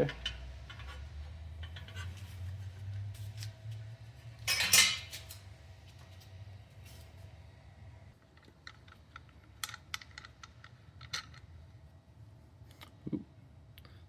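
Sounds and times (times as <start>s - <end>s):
metal parts clinking: 4.5s - 5.4s.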